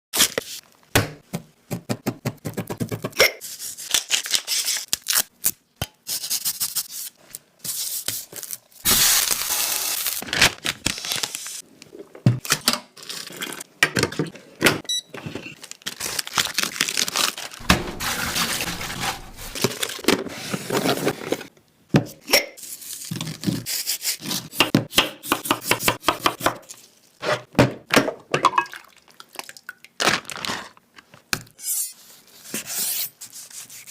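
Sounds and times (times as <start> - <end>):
utensils scraping pans: 17.6 - 21.4.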